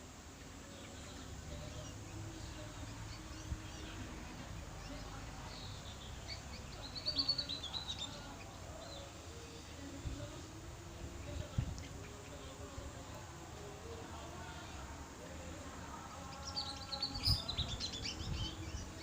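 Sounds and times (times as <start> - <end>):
bird chirping and twittering: 0.4 - 10.5, 15.9 - 19.0.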